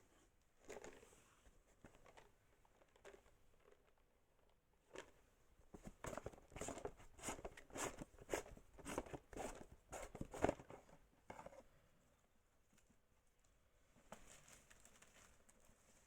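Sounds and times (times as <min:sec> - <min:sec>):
rustling crunching handling noises: 0:12.6 - 0:16.0.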